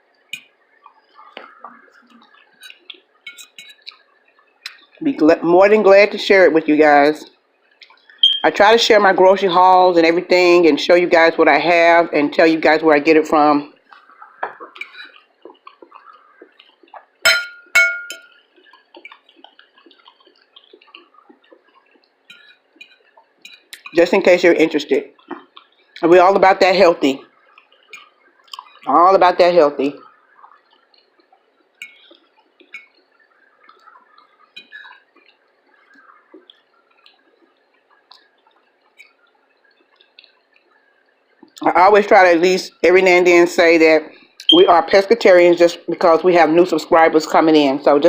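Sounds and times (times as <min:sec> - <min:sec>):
person chewing food: 0:00.3 - 0:05.0, 0:13.8 - 0:24.0, 0:25.1 - 0:26.0, 0:27.2 - 0:28.9, 0:30.0 - 0:41.6
tableware clinking: 0:03.3 - 0:03.8, 0:17.2 - 0:18.3.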